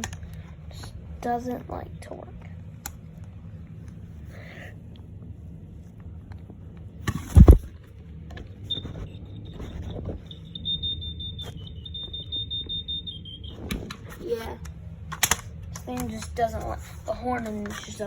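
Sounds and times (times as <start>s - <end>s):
smoke alarm faint wavering tone: 8.5s - 14.5s.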